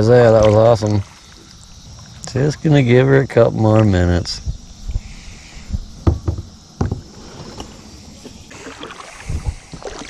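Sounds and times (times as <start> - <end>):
knocks on kayak hull: 6.0 - 7.1.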